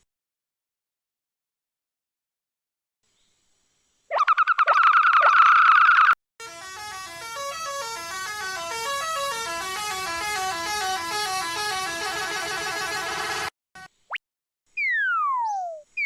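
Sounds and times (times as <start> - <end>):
horn-like tones stepping in pitch: 6.4 - 13.9.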